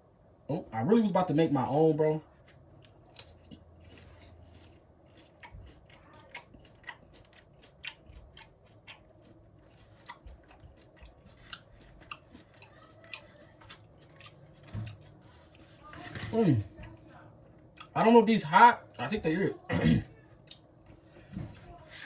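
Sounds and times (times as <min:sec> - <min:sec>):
chewing crunchy chips: 0:02.4 - 0:15.7, 0:17.7 - 0:18.0.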